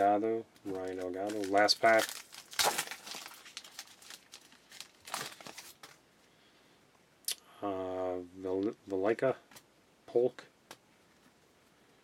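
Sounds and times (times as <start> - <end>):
wrapper tearing and crinkling: 0.8 - 6.0.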